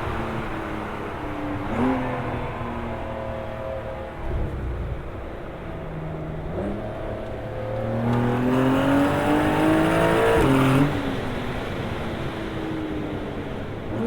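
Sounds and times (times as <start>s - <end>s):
car engine accelerating: 1.6s - 11.6s.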